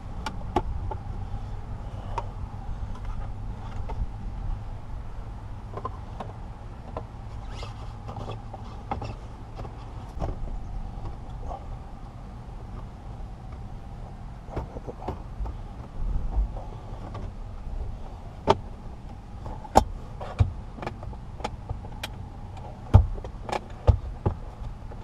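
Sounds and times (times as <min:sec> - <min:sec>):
low steady hum: 0:00.0 - 0:25.0
clicks and knocks of car armrest: 0:05.7 - 0:11.2, 0:14.5 - 0:17.4, 0:18.4 - 0:18.7, 0:19.4 - 0:25.0.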